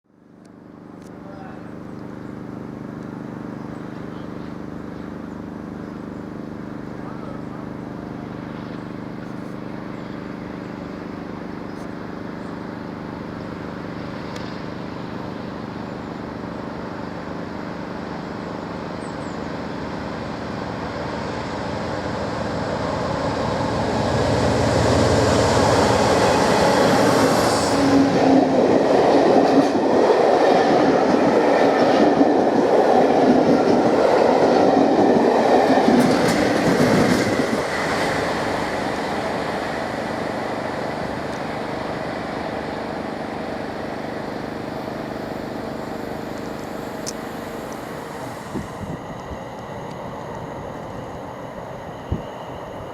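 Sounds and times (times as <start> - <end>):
diesel locomotive engine drone: 0.0 - 52.9
train wheels rumbling and clicking: 19.9 - 42.1, 43.9 - 52.9.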